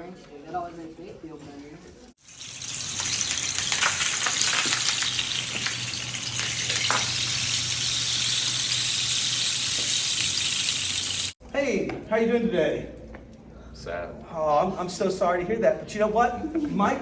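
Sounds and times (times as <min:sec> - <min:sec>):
rain stick beads trickling: 0:02.2 - 0:11.4.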